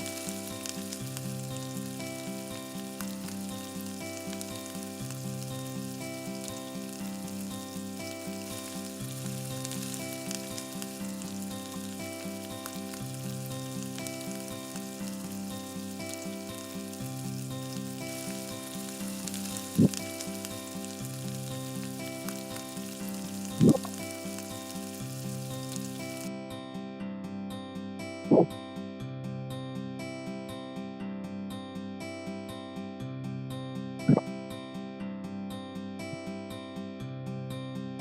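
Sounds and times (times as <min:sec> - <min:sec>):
food sizzling in a clay pot: 0:00.0 - 0:26.3.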